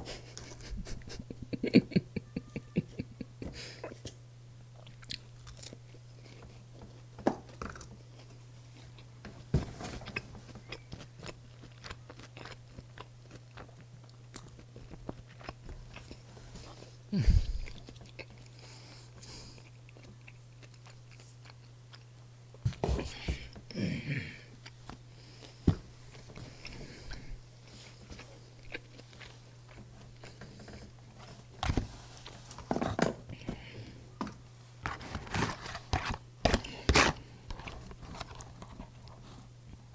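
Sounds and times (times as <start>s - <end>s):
faint low hum: 0.0s - 39.9s
person chewing crunchy food: 4.8s - 9.1s, 10.0s - 23.6s, 24.5s - 31.4s.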